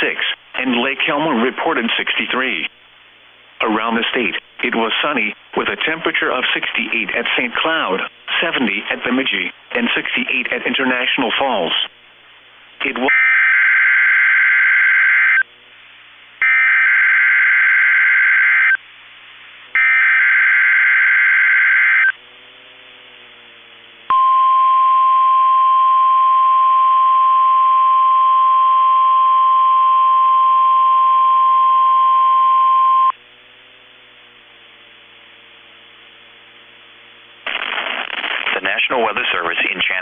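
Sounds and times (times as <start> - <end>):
steady high alarm tone: 13.1 - 15.4, 16.4 - 18.8, 19.8 - 22.2.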